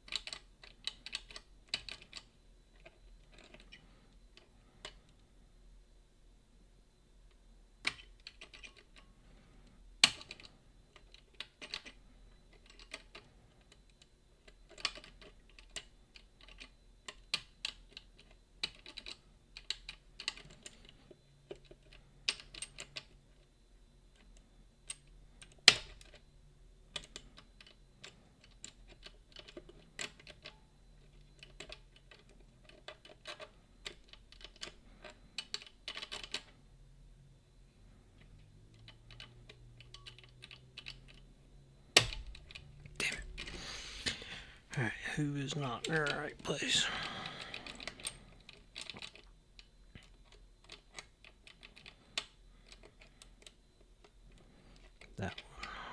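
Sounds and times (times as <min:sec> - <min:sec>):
lock picks clicking in lock: 0:07.8 - 0:09.0, 0:10.0 - 0:20.8, 0:26.9 - 0:36.5, 0:38.8 - 0:41.2.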